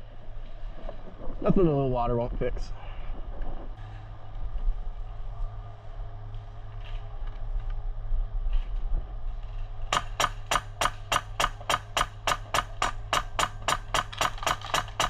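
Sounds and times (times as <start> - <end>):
low rumble: 0.0 - 9.9
faint outdoor noise: 0.0 - 15.0
sharp cracks: 9.9 - 15.0.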